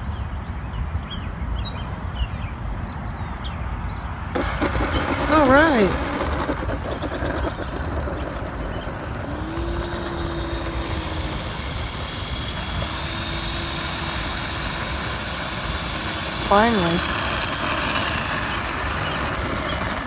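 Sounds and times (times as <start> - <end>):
electric fan jet whining: 4.3 - 20.0.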